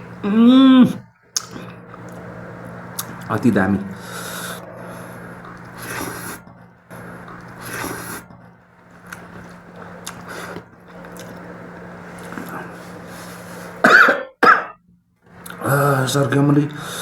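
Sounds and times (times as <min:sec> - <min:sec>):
wet chewing and smacking: 0:07.3 - 0:11.4.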